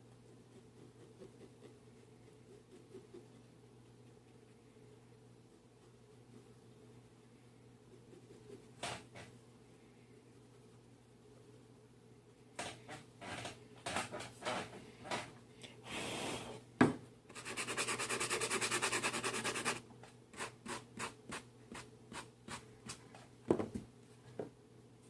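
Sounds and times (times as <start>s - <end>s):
scratchy hand rubbing: 0.3s - 4.6s, 7.9s - 9.3s, 17.3s - 19.8s.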